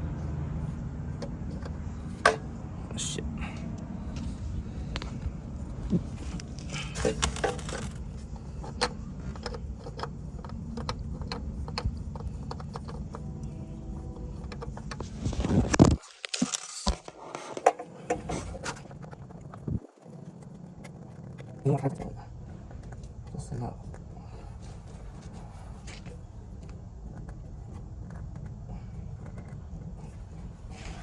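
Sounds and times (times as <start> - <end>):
steady low hum: 0.0 - 16.0, 17.1 - 31.0
metal parts clicking and clinking: 6.4 - 9.6.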